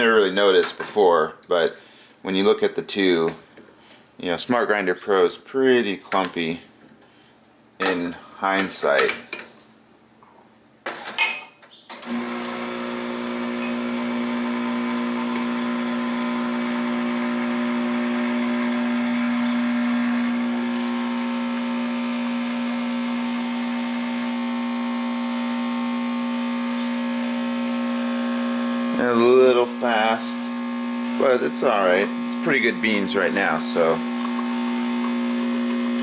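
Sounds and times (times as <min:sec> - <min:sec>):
espresso machine pump humming: 0:12.0 - 0:36.0.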